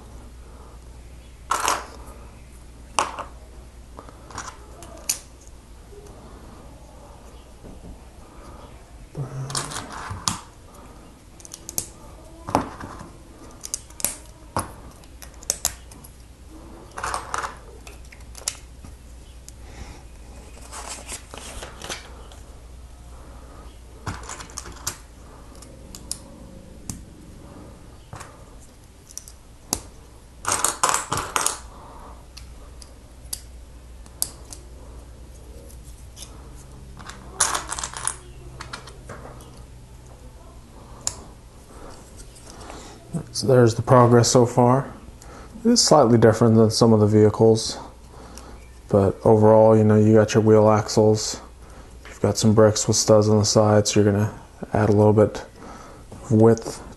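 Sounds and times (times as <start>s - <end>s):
plastic pieces snapping clicks: 15.0s - 16.0s, 30.4s - 31.7s
plastic pieces clattering: 16.9s - 18.6s, 37.0s - 38.9s.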